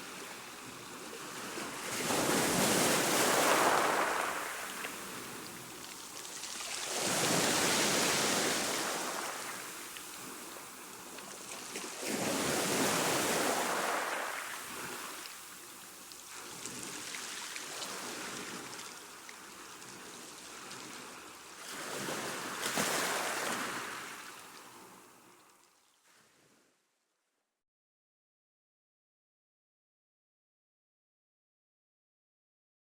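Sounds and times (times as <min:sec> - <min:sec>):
waves breaking: 0:00.1 - 0:15.5, 0:16.3 - 0:25.1.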